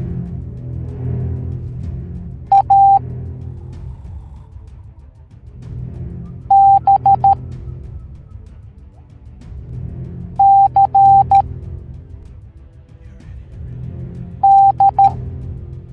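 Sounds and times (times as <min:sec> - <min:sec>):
quiet background music: 0:00.0 - 0:15.9
morse code beeps: 0:02.5 - 0:03.0, 0:06.5 - 0:07.4, 0:10.4 - 0:11.4, 0:14.4 - 0:15.2.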